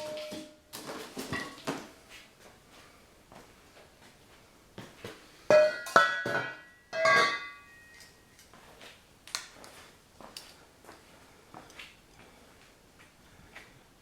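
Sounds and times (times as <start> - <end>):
metallic clinks and knocks: 5.5 - 8.2.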